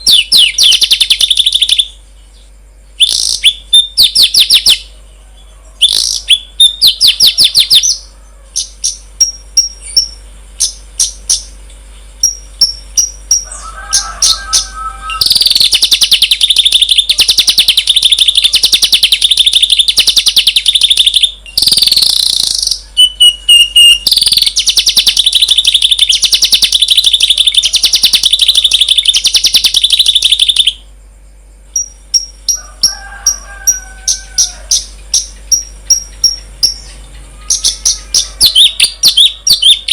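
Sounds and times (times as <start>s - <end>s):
sharp high bird chirps: 0.0s - 4.9s, 5.8s - 31.0s, 31.6s - 39.9s
rapid buzzing bird trill: 0.0s - 39.9s
whistled bird phrases: 14.2s - 30.8s.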